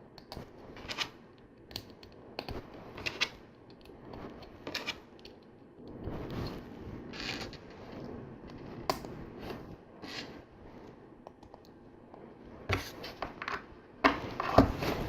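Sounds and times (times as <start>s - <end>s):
plastic parts rustling: 7.1s - 7.8s.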